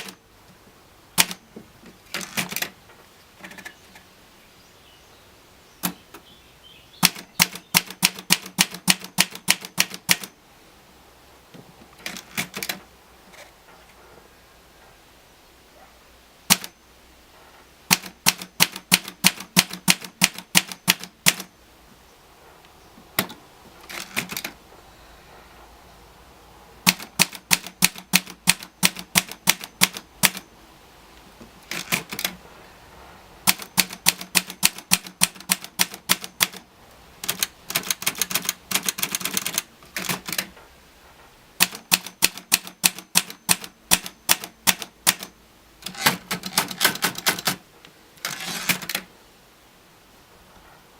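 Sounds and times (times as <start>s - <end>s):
typewriter key strikes: 1.2s - 1.4s, 2.1s - 2.7s, 7.0s - 10.4s, 12.0s - 12.8s, 16.5s - 16.7s, 17.9s - 21.5s, 23.2s - 24.6s, 26.9s - 30.5s, 31.7s - 32.4s, 33.4s - 36.6s, 37.2s - 40.5s, 41.6s - 47.6s.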